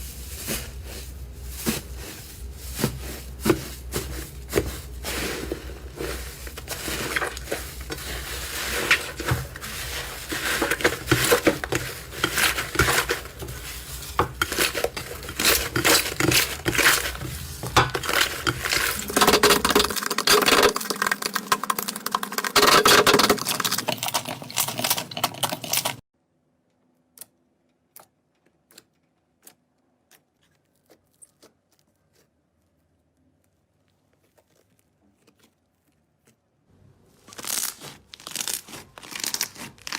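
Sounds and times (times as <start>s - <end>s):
slime squeezed by hand crackling: 37.2s - 39.9s.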